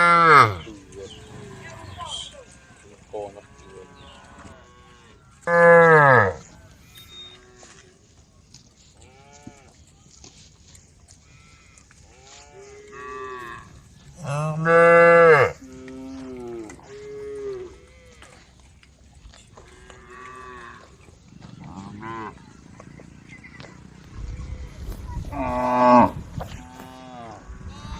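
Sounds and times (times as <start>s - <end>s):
cows mooing: 0.0s - 7.8s, 11.3s - 18.6s, 19.5s - 22.7s, 25.2s - 27.9s.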